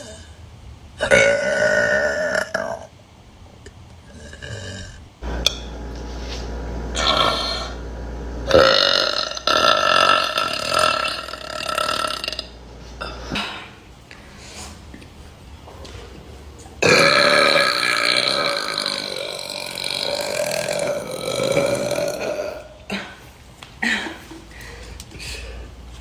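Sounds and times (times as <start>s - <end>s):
woman burping: 7.0s - 7.8s, 8.5s - 13.8s, 16.8s - 24.5s.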